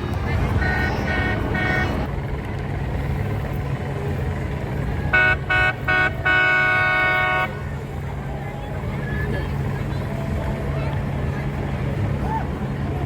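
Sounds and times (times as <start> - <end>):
low engine rumble: 0.0 - 13.0
boat horn blasts: 0.3 - 2.1, 5.0 - 7.9.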